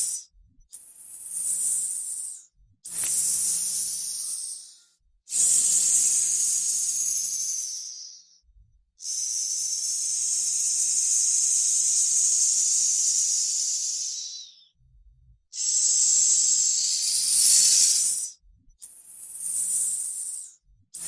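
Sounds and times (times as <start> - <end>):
snake hissing: 1.5 - 4.6, 5.3 - 8.2, 9.1 - 14.5, 15.6 - 18.3, 19.2 - 20.4.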